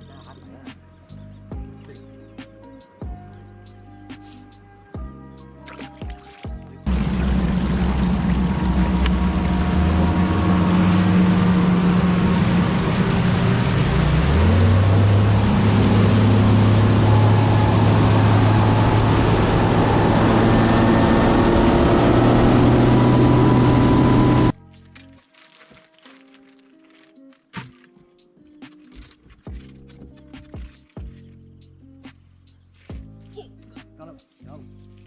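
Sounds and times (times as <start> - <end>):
wind: 0.0 - 24.6
water rushing: 5.8 - 24.6
outboard motor running: 6.0 - 24.6.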